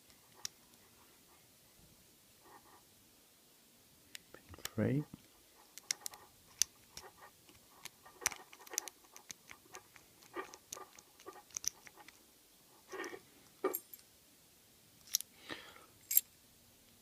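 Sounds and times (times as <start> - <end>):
padlock rattling: 7.8 - 12.2
metallic clicks of padlock picking: 15.0 - 15.3.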